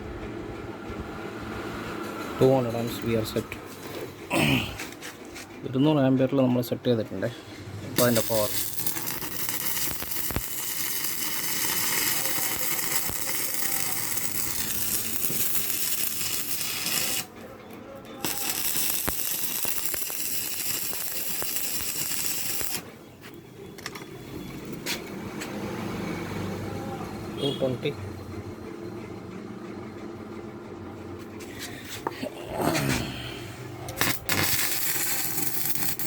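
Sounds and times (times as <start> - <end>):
welding arc crackling: 8.0 - 17.3, 18.2 - 22.9, 33.9 - 36.0.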